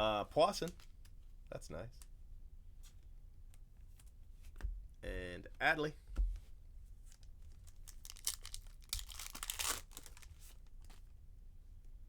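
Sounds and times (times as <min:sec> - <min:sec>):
plastic wrapper tearing and crinkling: 0:07.1 - 0:11.0.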